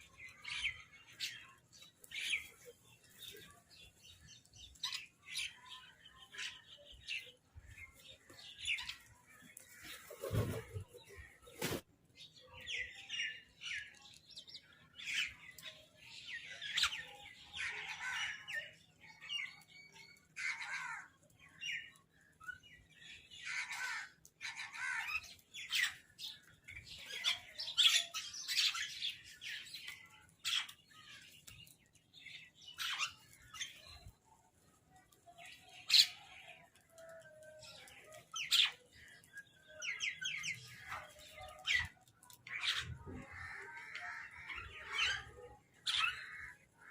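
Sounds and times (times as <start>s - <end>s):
crows calling: 20.4s - 21.2s, 23.4s - 25.3s, 42.6s - 46.9s.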